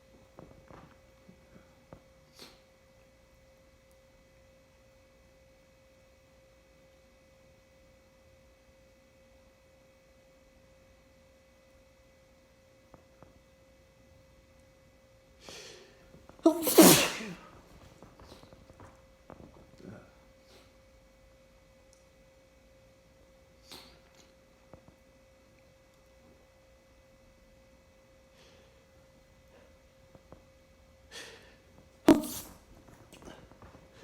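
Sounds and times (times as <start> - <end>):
faint steady hum: 0.0 - 34.0
person sneezing: 16.4 - 17.5, 32.1 - 32.6
sharp intake of breath: 16.5 - 17.4.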